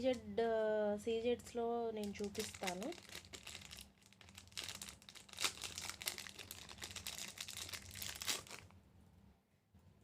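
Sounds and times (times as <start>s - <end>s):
packaging crinkling and rustling: 2.0s - 8.8s.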